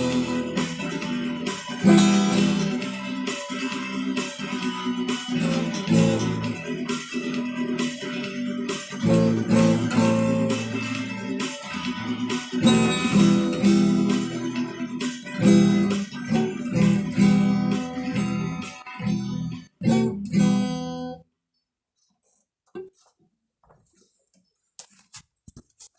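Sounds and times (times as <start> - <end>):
acoustic guitar strumming chords: 0.0 - 21.2.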